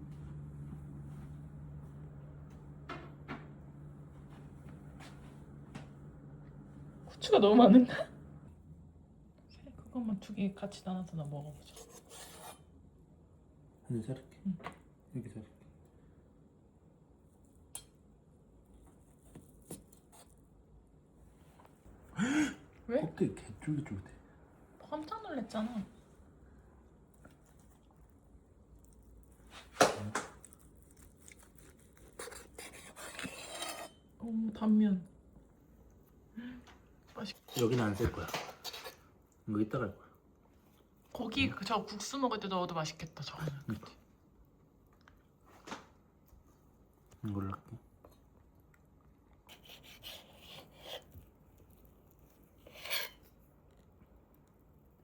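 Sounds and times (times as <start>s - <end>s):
knife rasping through meat: 11.6s - 12.6s, 30.5s - 34.0s, 49.5s - 51.2s, 52.6s - 53.3s.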